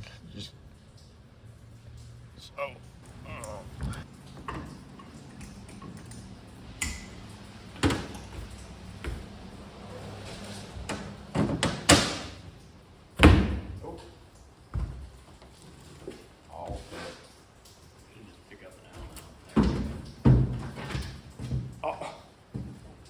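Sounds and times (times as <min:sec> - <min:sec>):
knocks and thumps on glass: 0:14.7 - 0:15.3, 0:19.0 - 0:21.9.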